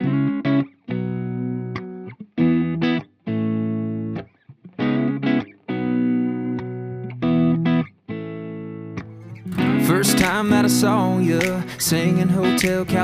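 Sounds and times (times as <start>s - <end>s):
guitar playing held chords: 0.0s - 13.0s.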